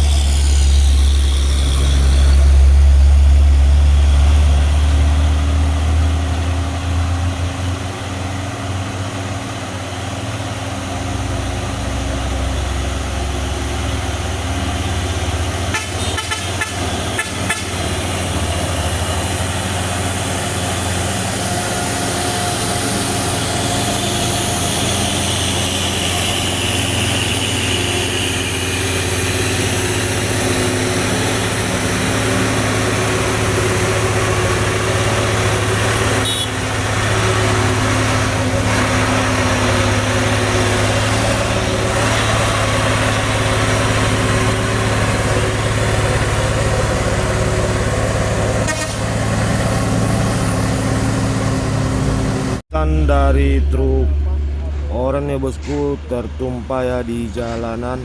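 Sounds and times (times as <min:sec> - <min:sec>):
heavy vehicle engines humming: 0:00.0 - 0:58.0
vehicle horn: 0:15.6 - 0:18.0, 0:24.3 - 0:29.2, 0:36.0 - 0:36.8, 0:48.6 - 0:49.2.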